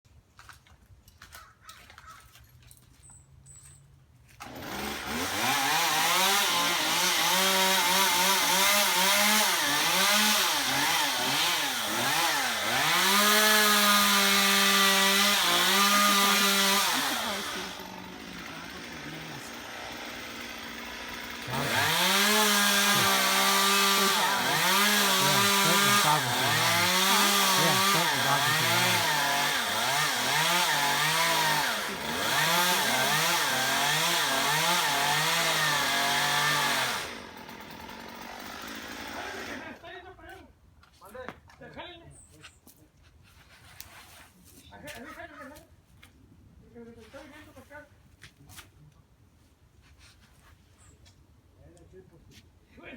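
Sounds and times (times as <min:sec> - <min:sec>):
chainsaw revving and cutting: 0:04.4 - 0:39.8.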